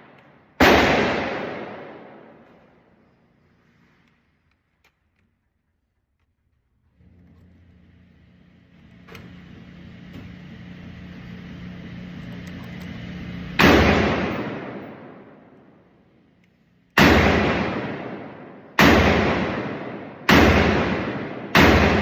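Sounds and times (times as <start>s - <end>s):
rifle shots: 0.0s - 2.6s, 13.5s - 15.6s, 17.0s - 22.0s
low hum: 6.3s - 22.0s.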